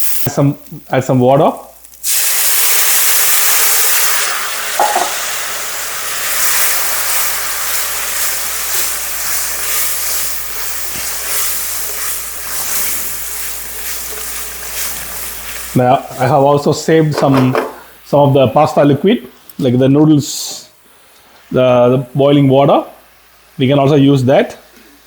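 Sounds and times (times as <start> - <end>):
water sizzling in a hot pan: 0.0 - 0.3, 1.8 - 16.6.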